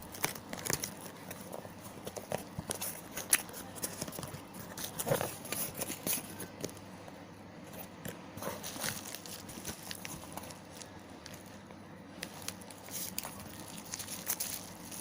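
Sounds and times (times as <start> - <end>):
plastic packaging rustling: 0.0 - 6.8, 8.4 - 15.0.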